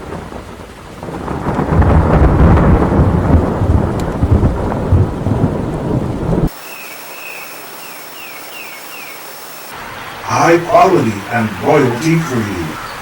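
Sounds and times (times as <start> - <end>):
deep thunder rumble: 0.0 - 6.5
steady rain: 0.0 - 13.0.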